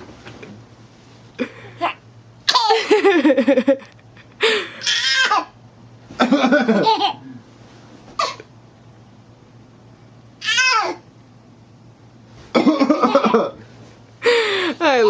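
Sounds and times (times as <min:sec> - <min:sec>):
person laughing: 0:02.6 - 0:04.8, 0:12.6 - 0:13.6.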